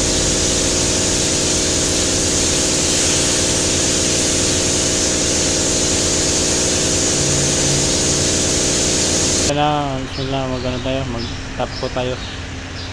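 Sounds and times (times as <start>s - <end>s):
spray gun hissing: 0.0s - 9.5s
mechanical hum: 0.0s - 12.9s.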